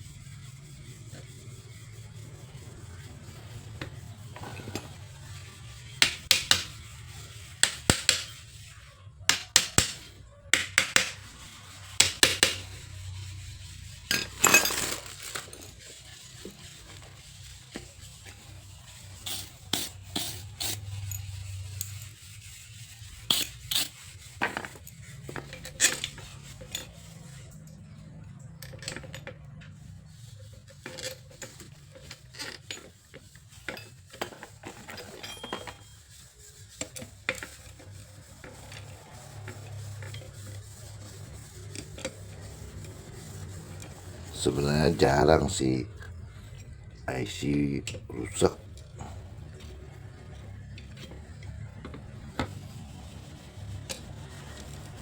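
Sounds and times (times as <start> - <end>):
metal parts clinking: 14.1 - 15.8, 34.4 - 35.9.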